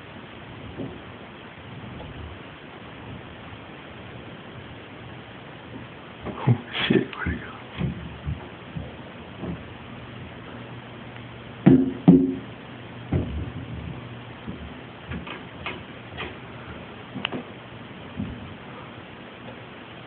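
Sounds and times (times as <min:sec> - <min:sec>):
faint ticks and knocks: 0:00.6 - 0:01.2, 0:07.7 - 0:18.6.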